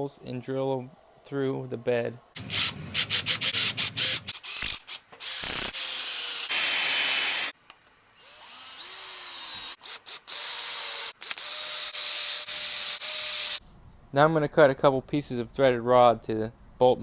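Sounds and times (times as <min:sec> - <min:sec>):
electric drill boring wood: 0:05.2 - 0:07.5, 0:08.2 - 0:13.6.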